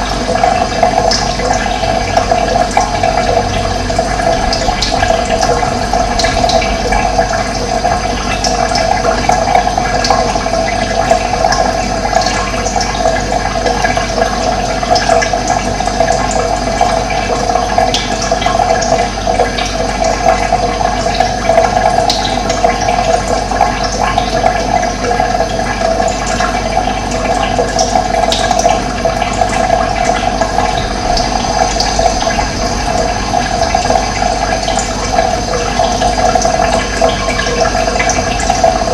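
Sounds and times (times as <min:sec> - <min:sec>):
water rushing: 0:00.0 - 0:14.6, 0:27.0 - 0:38.9.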